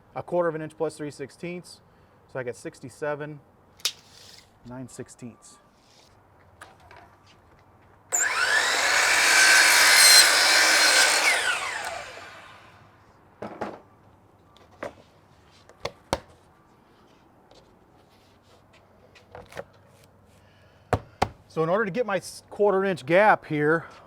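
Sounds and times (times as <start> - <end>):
power saw cutting board: 8.1 - 12.8.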